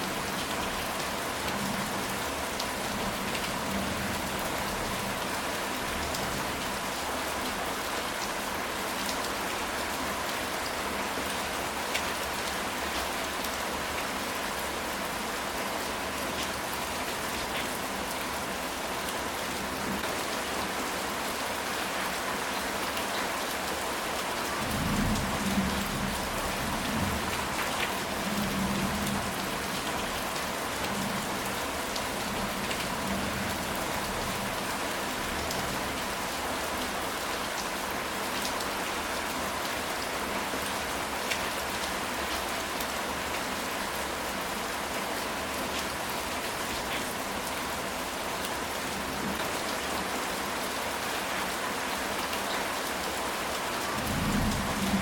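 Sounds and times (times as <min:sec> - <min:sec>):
rain on a tile roof: 0:00.0 - 0:55.0.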